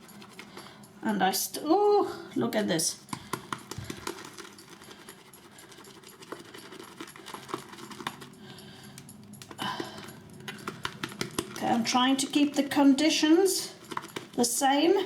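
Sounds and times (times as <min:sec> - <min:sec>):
brush clicking against bowl: 0:03.0 - 0:15.0.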